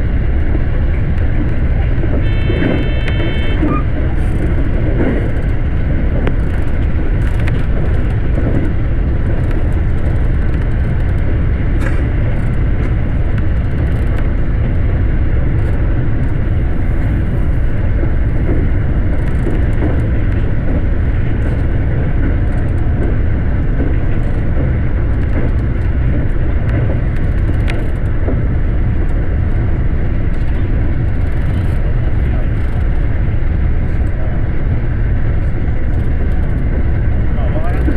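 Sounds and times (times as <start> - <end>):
electric train running on track: 0.0 - 37.9.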